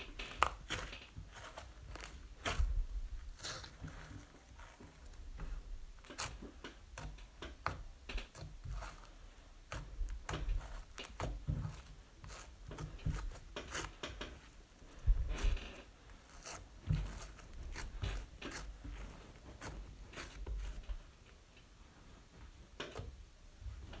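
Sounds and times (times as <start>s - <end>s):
soft low thumps: 15.0s - 15.6s.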